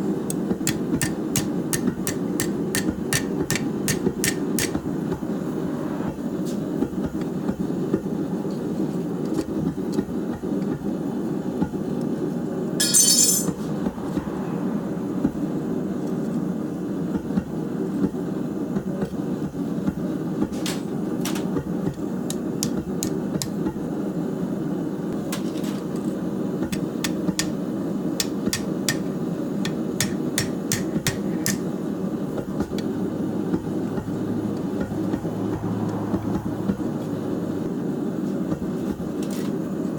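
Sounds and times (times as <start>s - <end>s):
hammer striking hot steel on anvil: 0.2s - 5.0s, 12.8s - 13.9s, 20.7s - 23.6s, 26.6s - 31.8s
forge roaring: 4.8s - 6.4s, 13.7s - 17.0s.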